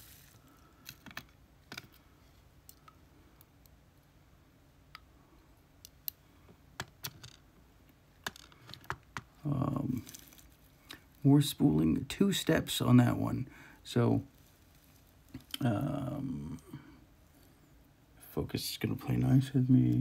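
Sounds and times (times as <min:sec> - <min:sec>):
rustle: 0:00.0 - 0:00.9.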